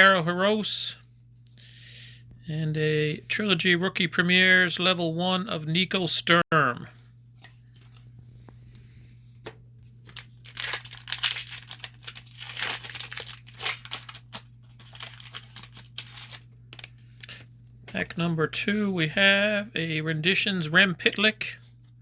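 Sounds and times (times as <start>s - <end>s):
foil card pack crinkling: 10.0s - 17.5s.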